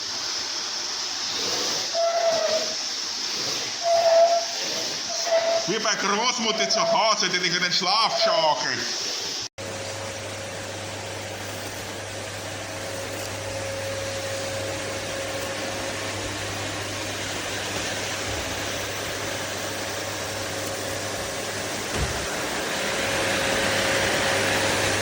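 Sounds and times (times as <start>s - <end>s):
vacuum cleaner whine: 0.0s - 25.0s.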